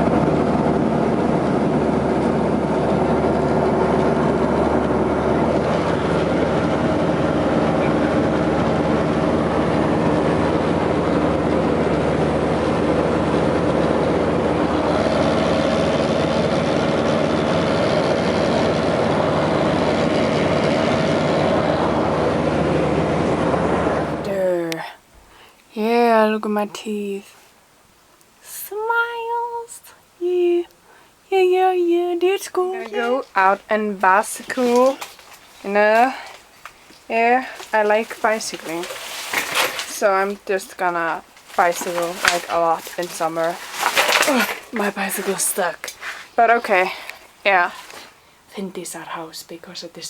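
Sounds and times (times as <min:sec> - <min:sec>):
aircraft engine drone in cabin: 0:00.0 - 0:24.2.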